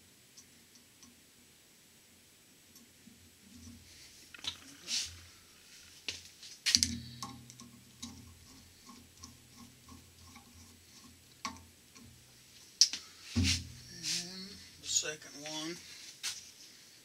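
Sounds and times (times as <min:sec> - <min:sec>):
light metal ticks: 0:06.7 - 0:12.2.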